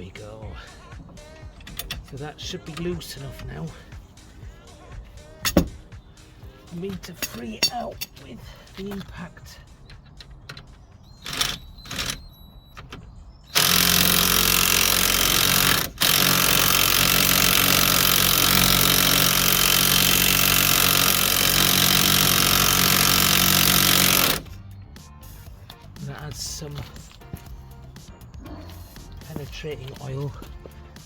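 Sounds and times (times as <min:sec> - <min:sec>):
impact wrench hammering: 0:05.4 - 0:05.9, 0:07.0 - 0:08.2, 0:13.5 - 0:24.5.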